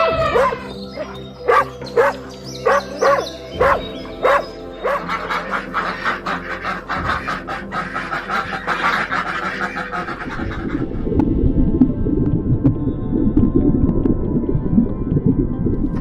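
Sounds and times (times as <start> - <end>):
rapid overlapping animal calls: 0.0 - 10.9
dog barking: 0.2 - 5.2.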